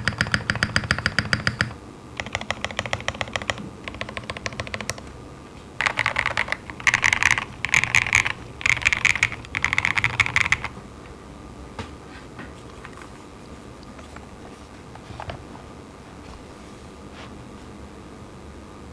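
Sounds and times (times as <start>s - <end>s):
typing on mechanical keyboard: 0.0s - 5.2s, 5.8s - 10.8s.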